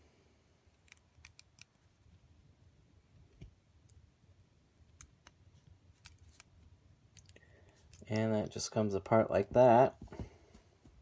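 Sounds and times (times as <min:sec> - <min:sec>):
small clicks of toy being handled: 0:00.7 - 0:01.8, 0:04.9 - 0:08.3.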